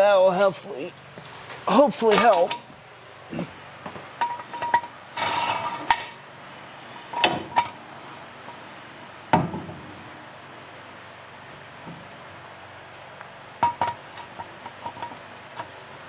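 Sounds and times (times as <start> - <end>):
metal clanks and clinks: 4.2 - 6.2
metal scraping rattle: 4.2 - 6.2.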